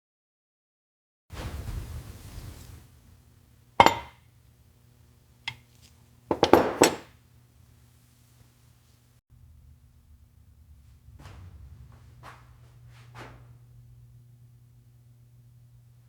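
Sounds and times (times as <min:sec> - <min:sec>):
metal clinks: 0:03.8 - 0:04.1, 0:06.3 - 0:07.1.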